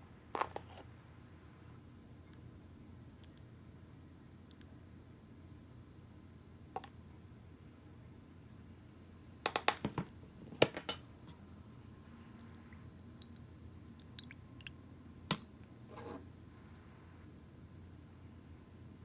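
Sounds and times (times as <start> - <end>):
sharp clicks and taps: 9.5 - 10.0.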